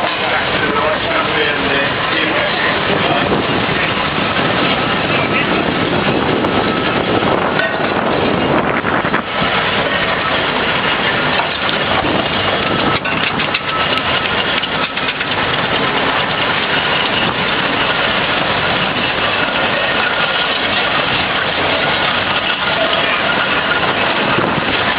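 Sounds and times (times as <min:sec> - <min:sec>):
steam engine running: 0:00.0 - 0:24.9.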